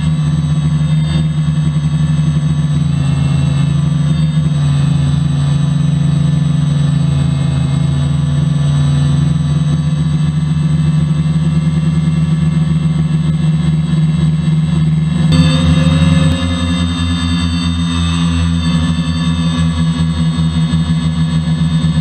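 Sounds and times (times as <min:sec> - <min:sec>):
thin high whine: 0:00.0 - 0:06.6, 0:15.2 - 0:22.0
quadcopter motors humming: 0:14.7 - 0:22.0.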